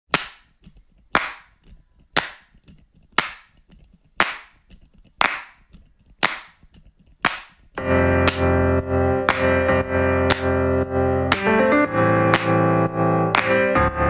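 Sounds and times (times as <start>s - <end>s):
sharp clap-like hits: 0.1s - 0.5s, 1.2s - 1.6s, 2.2s - 2.6s, 3.2s - 3.6s, 4.2s - 4.6s, 5.2s - 5.6s, 6.2s - 6.6s, 7.2s - 13.9s.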